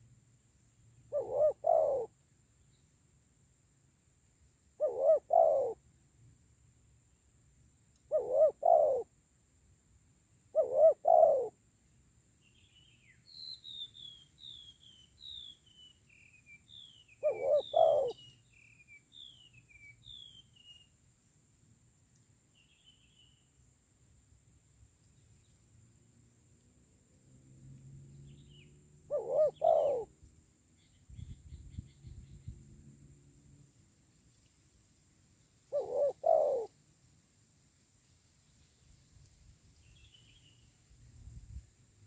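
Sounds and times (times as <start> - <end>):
doves cooing: 1.1 - 2.1, 4.8 - 5.8, 8.1 - 9.1, 10.6 - 11.6, 17.2 - 18.2, 29.1 - 30.1, 35.7 - 36.7
small bird chirping: 12.4 - 21.0, 22.1 - 23.6, 28.2 - 32.9, 35.7 - 36.7, 39.7 - 41.6.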